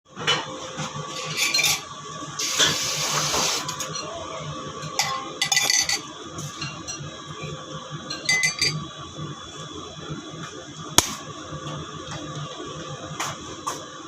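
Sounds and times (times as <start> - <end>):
dishes and utensils clinking: 1.1 - 1.9, 2.5 - 4.2, 4.8 - 8.9.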